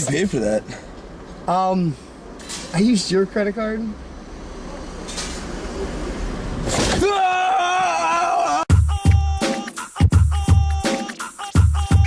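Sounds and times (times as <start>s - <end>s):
hip-hop beat music: 8.7s - 12.0s.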